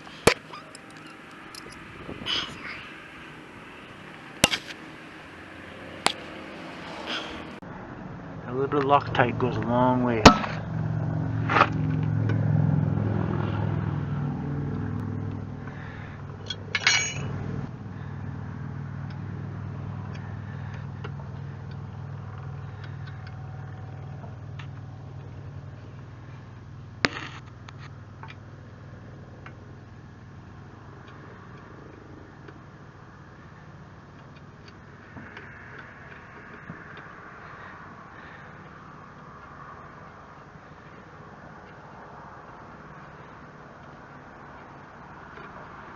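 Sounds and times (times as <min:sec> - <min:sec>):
metal tools clinking: 0:00.0 - 0:02.6, 0:16.4 - 0:17.3.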